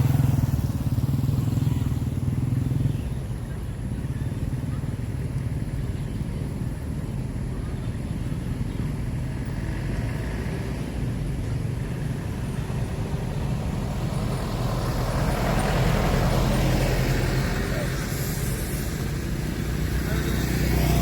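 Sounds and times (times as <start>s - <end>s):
vehicle passing: 0.0s - 2.9s, 9.4s - 21.0s
vehicle engine rumbling: 0.0s - 21.0s.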